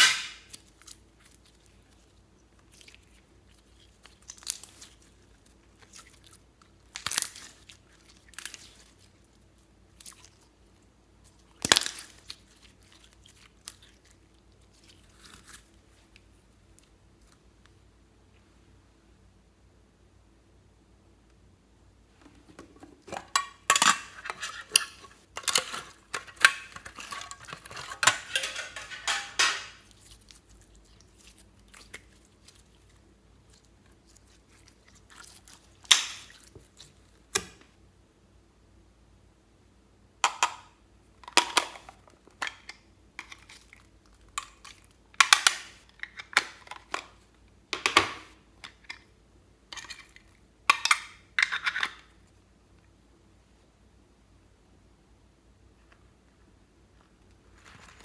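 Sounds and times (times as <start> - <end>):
slime crackling and popping: 0.0 - 10.5, 11.3 - 16.9, 29.6 - 37.6
slime squished by hand: 0.0 - 17.4.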